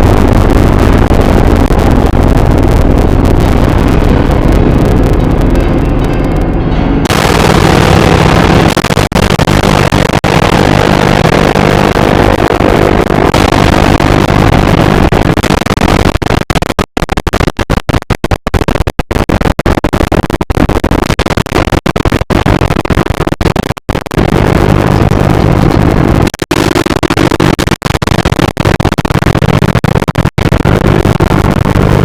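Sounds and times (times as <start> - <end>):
harsh glitchy electronic noise: 0.0 - 32.0.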